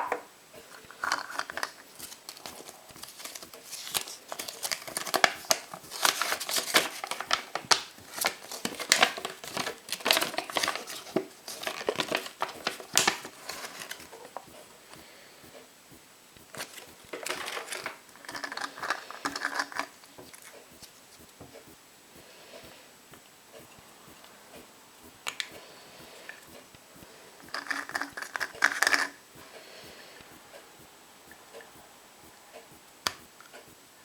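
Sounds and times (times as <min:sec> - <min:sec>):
foil wrapper crinkling: 0:00.7 - 0:14.5, 0:16.5 - 0:20.9, 0:27.5 - 0:29.2.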